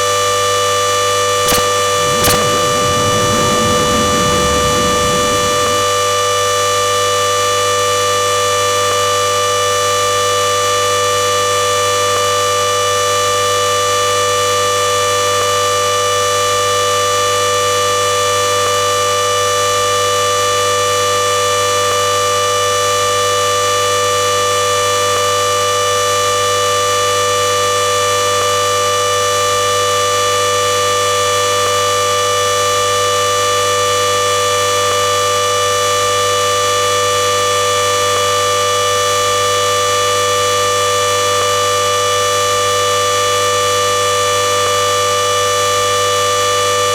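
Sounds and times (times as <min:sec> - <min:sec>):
washing machine spinning: 0:01.9 - 0:06.2.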